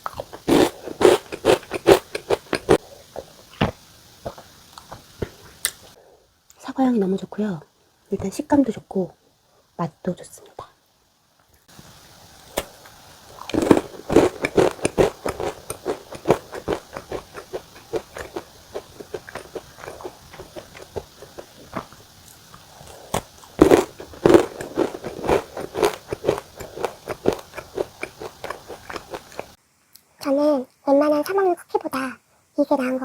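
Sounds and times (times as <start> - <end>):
cookie crunching being bitten: 0.0 - 5.0, 12.5 - 29.6
quiet chewing: 0.0 - 6.0, 12.5 - 30.0.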